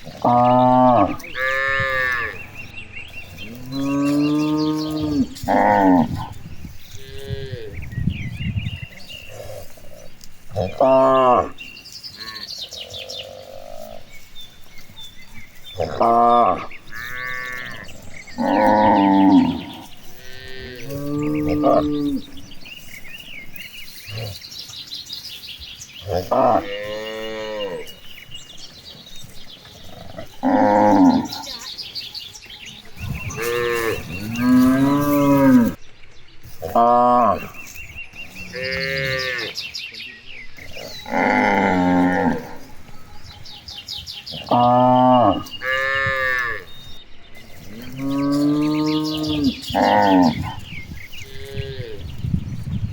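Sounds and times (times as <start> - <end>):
cattle mooing: 0.1 - 2.6, 3.4 - 7.8, 10.5 - 12.6, 15.7 - 22.6, 26.0 - 27.9, 29.8 - 31.7, 33.0 - 35.8, 38.4 - 39.6, 40.6 - 42.9, 44.3 - 46.7, 47.6 - 52.0.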